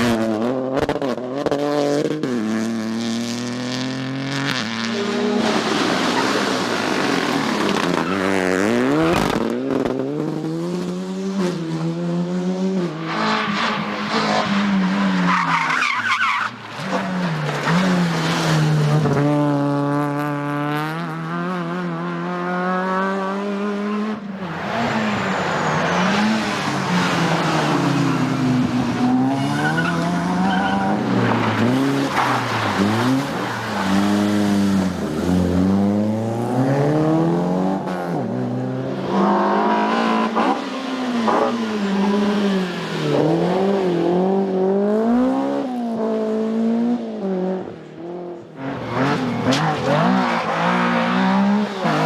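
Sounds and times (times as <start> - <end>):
rally car engines revving: 0.0 - 52.0.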